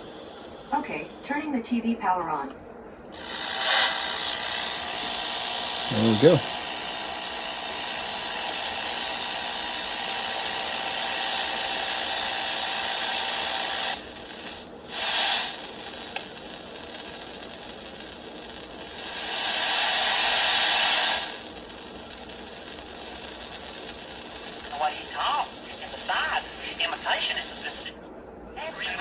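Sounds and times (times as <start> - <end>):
tv static hiss: 0.0 - 2.5, 4.2 - 6.7, 13.7 - 29.0.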